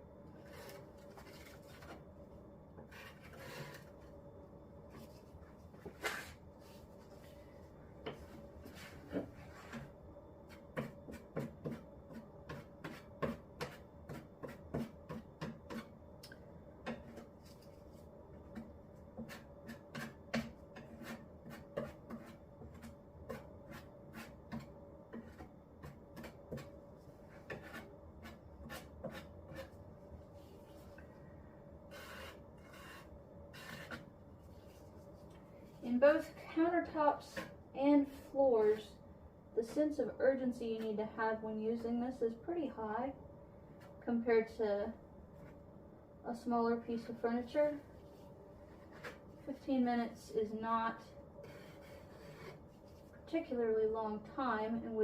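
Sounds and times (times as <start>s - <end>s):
tool scraping wet cement: 2.8s - 4.0s, 27.3s - 29.7s, 31.9s - 34.1s.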